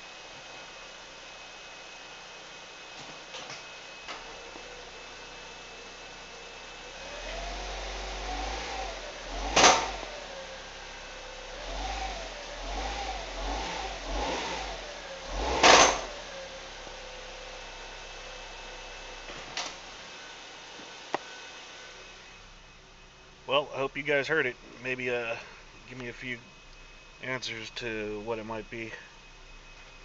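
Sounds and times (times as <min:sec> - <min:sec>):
car engine revving: 0:06.7 - 0:20.0.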